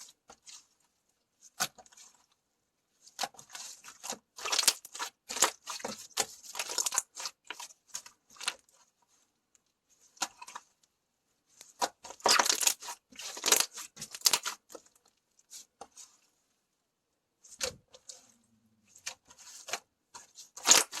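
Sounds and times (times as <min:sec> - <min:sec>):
slime crackling and popping: 0:20.6 - 0:21.0.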